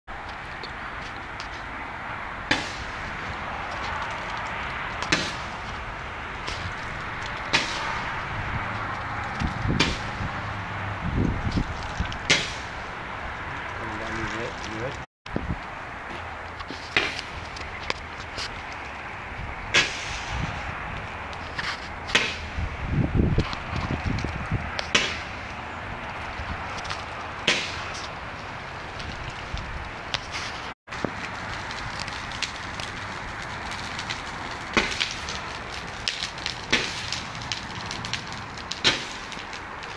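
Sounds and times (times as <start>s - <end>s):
low rumbling: 0.1s - 39.9s
firework cracks: 2.4s - 10.5s, 11.2s - 12.9s, 15.9s - 39.9s
fireworks bangs: 2.4s - 10.5s, 19.6s - 20.9s.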